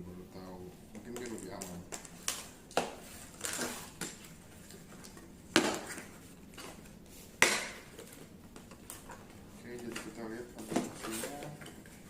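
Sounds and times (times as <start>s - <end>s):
cardboard rustling: 8.9s - 12.0s.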